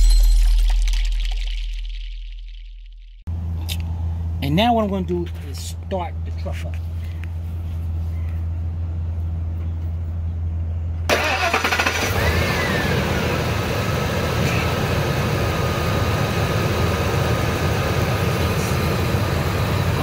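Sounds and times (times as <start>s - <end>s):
steady low hum: 0.0s - 11.1s
engine whine: 0.0s - 20.0s
truck engine idling: 3.3s - 20.0s
starter motor cranking: 11.1s - 12.8s.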